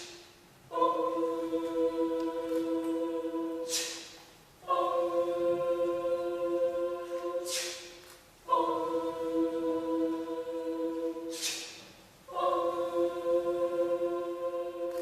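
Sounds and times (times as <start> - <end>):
choir singing held chords: 0.0 - 15.0
brief hiss: 3.7 - 4.3, 7.5 - 8.0, 11.3 - 12.0.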